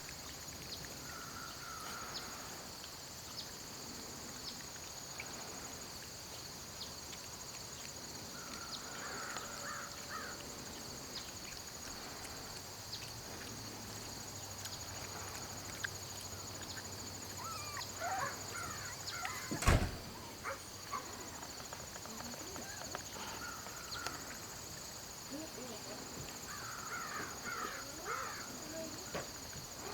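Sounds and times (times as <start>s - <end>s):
crickets chorus: 0.0s - 29.9s.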